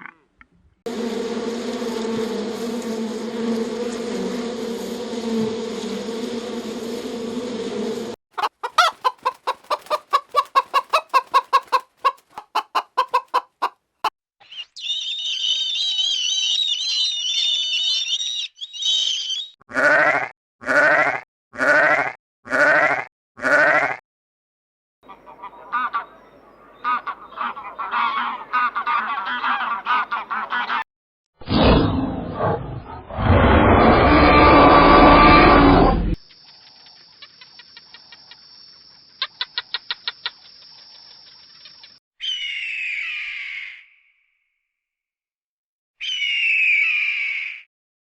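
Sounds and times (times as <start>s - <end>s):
poultry calls: 8.4s - 13.7s, 25.1s - 30.8s
chickens clucking: 8.4s - 13.8s
high warbling chirps: 14.4s - 19.5s.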